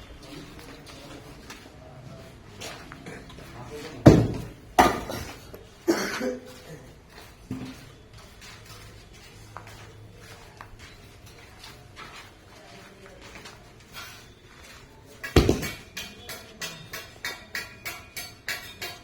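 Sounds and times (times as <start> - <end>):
hard objects knocking and clattering: 4.0 - 5.5, 15.2 - 19.0.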